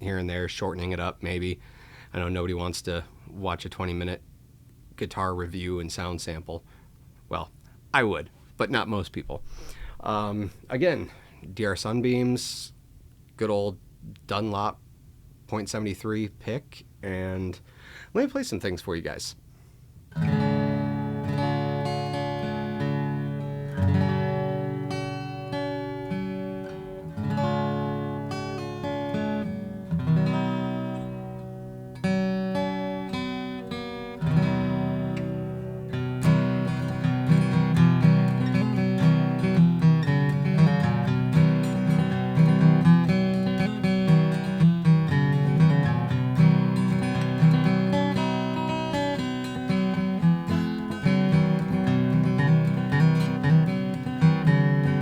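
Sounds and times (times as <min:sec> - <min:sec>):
acoustic guitar strumming: 0:09.2 - 0:11.0, 0:20.1 - 0:55.0.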